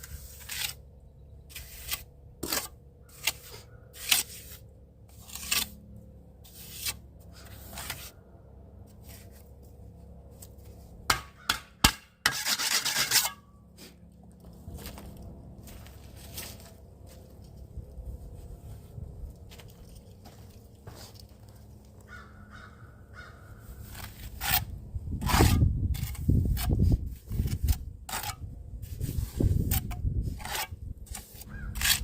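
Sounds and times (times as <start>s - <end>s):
short scraping strokes: 1.5s - 5.8s, 6.4s - 8.2s, 12.2s - 14.0s.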